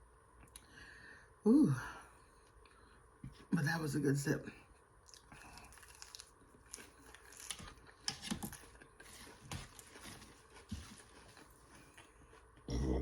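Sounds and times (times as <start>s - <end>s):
food being chewed: 4.7s - 12.8s.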